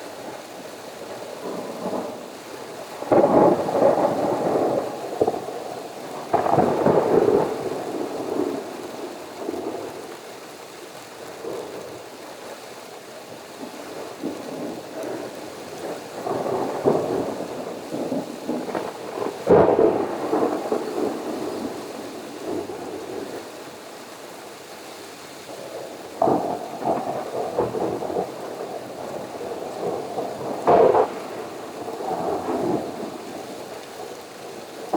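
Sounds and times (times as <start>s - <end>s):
steady rain: 0.0s - 34.9s
thunder rumbling: 1.1s - 10.1s, 13.6s - 23.7s, 25.6s - 34.9s
sharp thunderclap: 6.3s - 8.7s, 15.8s - 23.2s, 26.2s - 33.4s.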